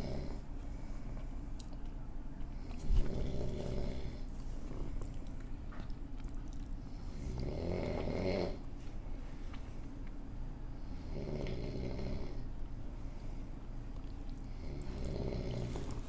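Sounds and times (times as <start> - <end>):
loud snoring: 0.0 - 0.4, 3.0 - 4.2, 7.1 - 8.6, 11.0 - 12.4, 14.6 - 16.0.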